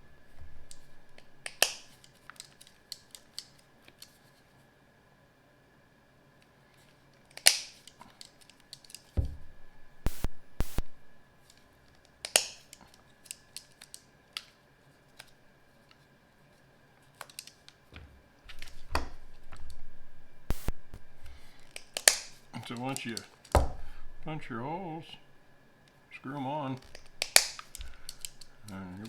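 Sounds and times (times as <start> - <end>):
leather hole punch clicks: 0.7 - 4.1, 7.3 - 9.4, 12.2 - 14.0, 21.6 - 23.8, 26.8 - 28.8
handling noise: 6.8 - 25.7, 26.3 - 29.0.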